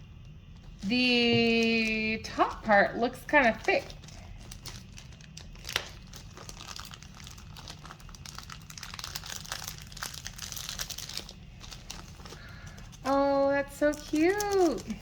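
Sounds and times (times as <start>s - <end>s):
packaging crinkling: 0.2s - 15.0s.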